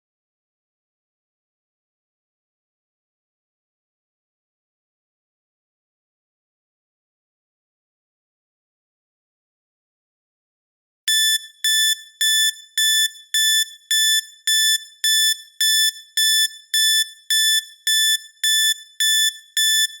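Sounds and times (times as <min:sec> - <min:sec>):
timer alarm beeping: 0:11.1 - 0:20.0.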